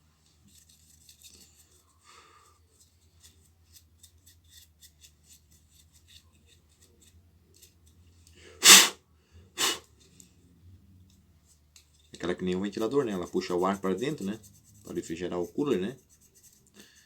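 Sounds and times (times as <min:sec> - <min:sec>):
brush scratching fan grille: 0:00.3 - 0:02.0, 0:02.6 - 0:07.9, 0:12.2 - 0:17.0
bursts of breath: 0:08.4 - 0:09.0, 0:09.6 - 0:09.8.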